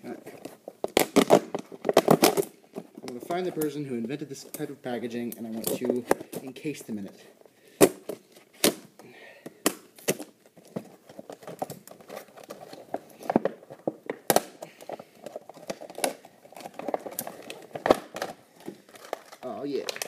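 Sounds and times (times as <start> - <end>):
plastic packaging crinkling: 9.8 - 20.0.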